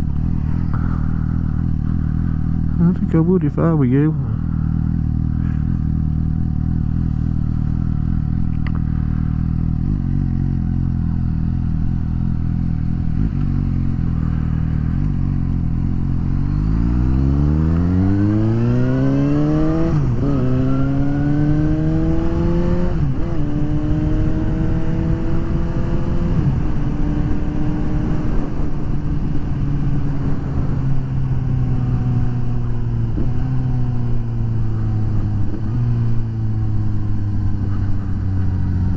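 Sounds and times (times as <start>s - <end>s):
motorcycle engine accelerating: 0.0s - 38.9s
wind noise: 17.2s - 36.6s.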